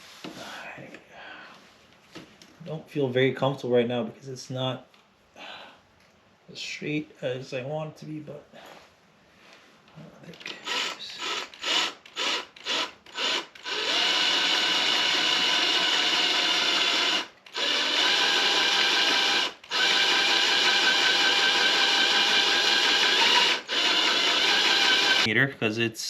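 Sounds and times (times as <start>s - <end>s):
power drill boring into metal: 10.5s - 25.3s.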